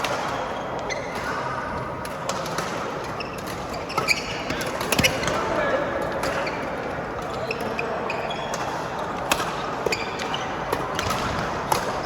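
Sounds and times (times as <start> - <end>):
sports hall background noise: 0.0 - 12.0
rackets striking shuttlecock: 8.5 - 12.0.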